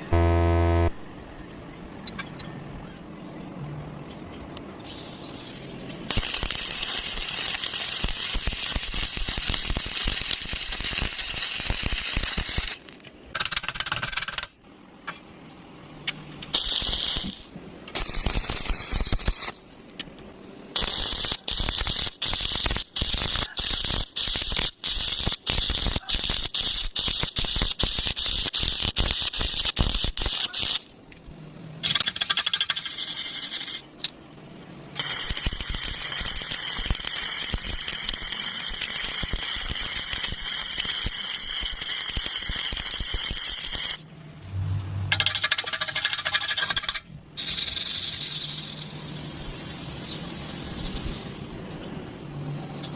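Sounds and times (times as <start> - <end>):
welding arc crackling: 0.0 - 0.9, 5.6 - 13.0, 16.4 - 19.6, 20.7 - 30.9, 32.6 - 33.9, 35.0 - 44.1, 47.4 - 51.0.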